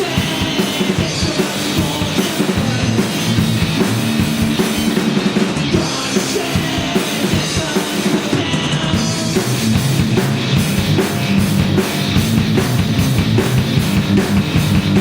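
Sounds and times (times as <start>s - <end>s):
bass line: 0.0s - 15.0s
driving drum kit: 0.0s - 15.0s
electric guitars: 0.0s - 15.0s
live rock band: 0.0s - 15.0s.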